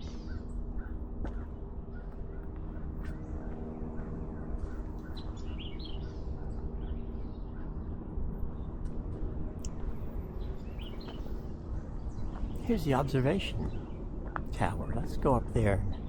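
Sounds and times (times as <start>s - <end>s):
birds chirping: 9.7s - 16.0s.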